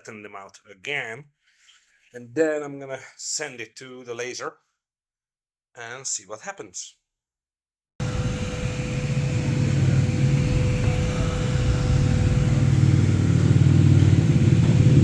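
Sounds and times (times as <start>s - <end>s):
laser engraver humming: 8.0s - 15.0s
thin steady whine: 8.0s - 15.0s.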